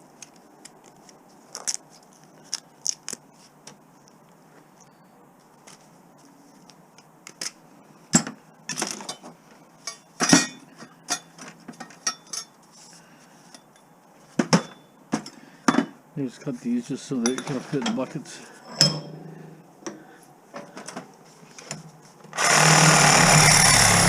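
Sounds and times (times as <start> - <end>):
scrap metal clinking and clattering: 8.2 - 12.6, 17.2 - 19.6.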